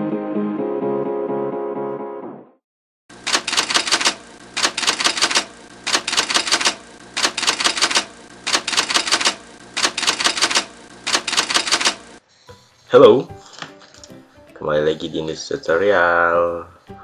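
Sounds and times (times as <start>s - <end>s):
typewriter keys clacking: 3.3s - 12.1s.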